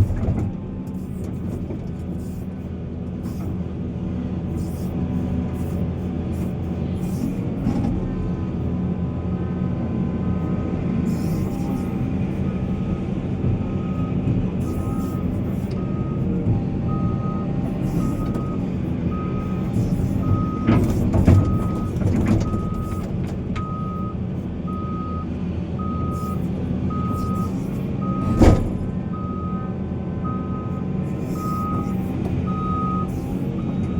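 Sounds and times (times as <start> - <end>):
heavy diesel engines running: 0.0 - 33.9
reversing alarm beeping: 13.8 - 23.0, 23.6 - 33.9.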